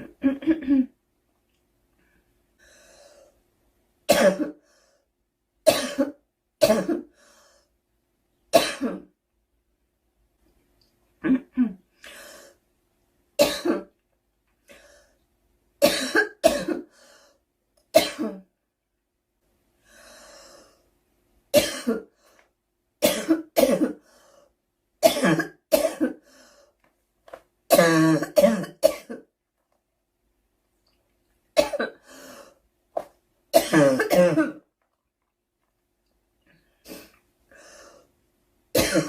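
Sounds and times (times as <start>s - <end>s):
girl coughing: 0.0s - 0.9s, 4.1s - 4.6s, 5.7s - 7.1s, 8.6s - 9.1s, 13.4s - 13.9s, 15.8s - 16.9s, 18.0s - 18.5s, 21.6s - 22.1s, 23.0s - 24.0s, 25.0s - 26.2s, 27.7s - 29.3s, 31.6s - 32.0s, 33.6s - 34.6s, 38.8s - 39.0s
girl breathing: 2.0s - 3.4s, 7.1s - 7.8s, 12.0s - 12.6s, 16.9s - 17.4s, 19.8s - 20.9s, 24.0s - 24.6s, 26.2s - 26.8s, 32.0s - 32.6s, 36.5s - 38.1s.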